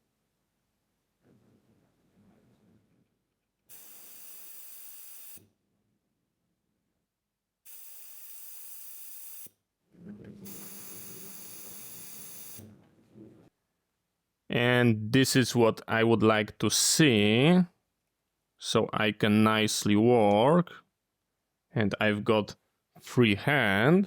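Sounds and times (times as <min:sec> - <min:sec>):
steady hissing bursts: 0:10.4 - 0:12.7.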